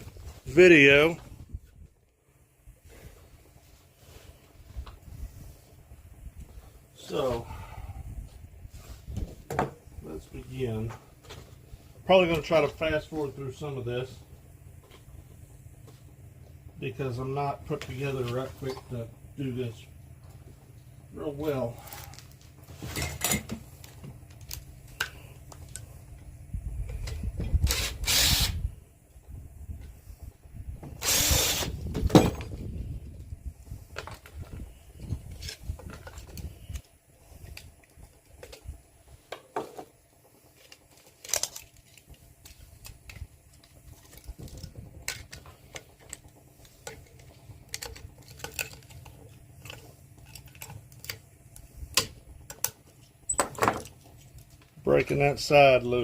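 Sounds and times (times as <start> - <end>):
loud noisy tool bursts: 27.6 - 28.7, 31.0 - 32.4.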